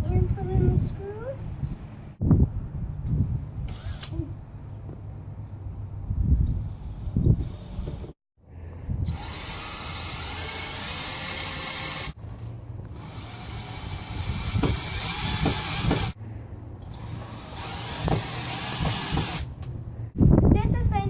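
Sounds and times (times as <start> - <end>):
power drill driving screws: 3.6 - 4.1, 9.1 - 12.2, 12.9 - 16.2, 16.8 - 19.5.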